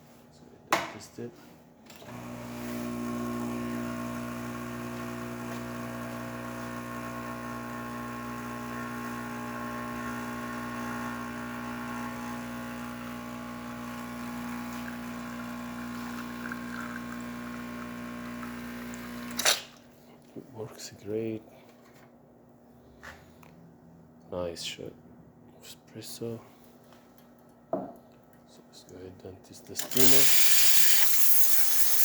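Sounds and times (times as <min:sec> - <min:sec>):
espresso machine pump humming: 0:02.1 - 0:19.4, 0:29.8 - 0:32.0.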